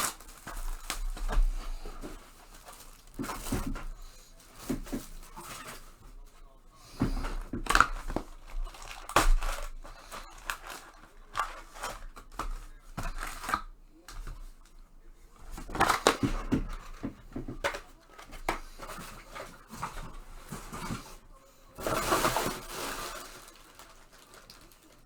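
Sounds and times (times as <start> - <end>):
wrappers tearing and crinkling: 0.0 - 5.9, 7.1 - 13.7, 21.8 - 25.0
cards clicking and rustling: 0.0 - 25.0.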